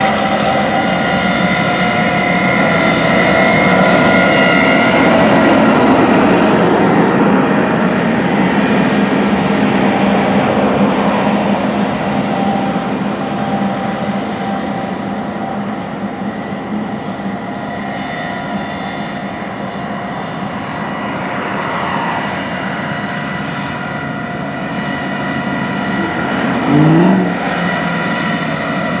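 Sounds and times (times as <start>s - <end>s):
loud diesel engine drone: 0.0s - 29.0s
machine whining tones: 23.7s - 28.9s.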